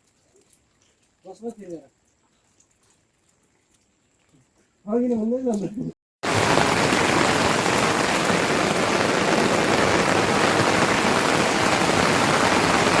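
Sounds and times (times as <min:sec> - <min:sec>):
heavy rain falling: 0:06.2 - 0:13.0.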